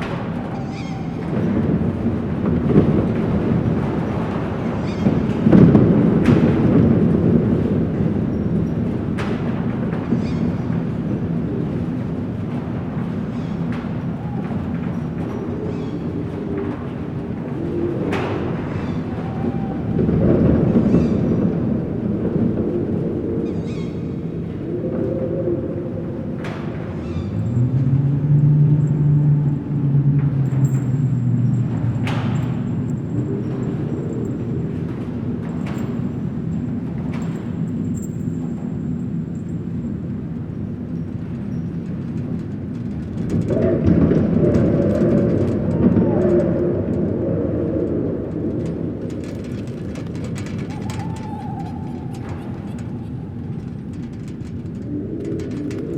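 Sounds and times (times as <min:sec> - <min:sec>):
low rumbling drone: 0:12.2 - 0:36.3, 0:43.4 - 0:55.9.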